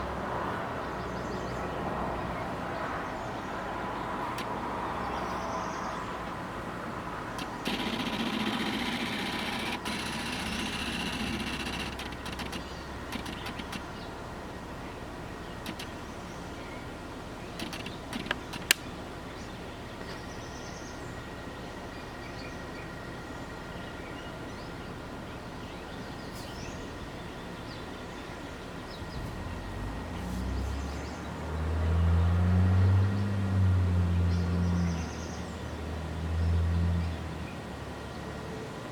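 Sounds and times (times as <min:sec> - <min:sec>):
road traffic hum: 0:00.0 - 0:38.9
small birds chirping: 0:00.8 - 0:38.4
sharp clicks: 0:04.2 - 0:05.2, 0:07.2 - 0:14.1, 0:15.5 - 0:16.4, 0:17.5 - 0:19.0
single click: 0:17.6 - 0:18.9.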